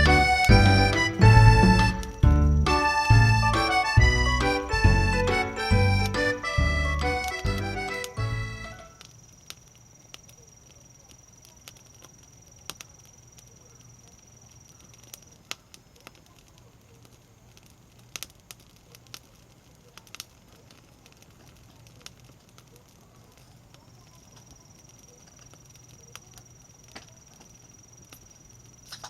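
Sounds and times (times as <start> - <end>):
background music: 0.0 - 8.9
wood fire crackling and popping: 0.0 - 29.0.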